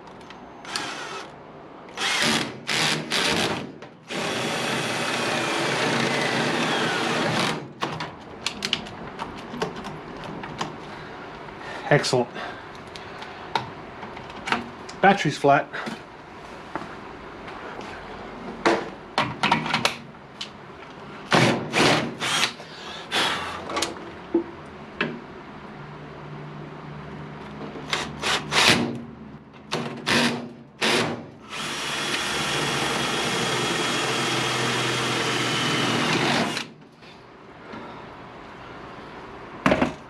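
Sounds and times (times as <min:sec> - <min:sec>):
power drill running: 0:00.6 - 0:01.3, 0:01.9 - 0:07.6, 0:21.7 - 0:23.3, 0:30.1 - 0:36.7.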